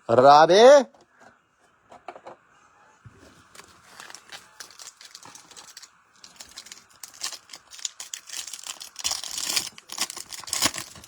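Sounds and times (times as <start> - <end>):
foil wrappers crinkling: 3.5 - 11.0
cards clicking together: 3.6 - 11.0.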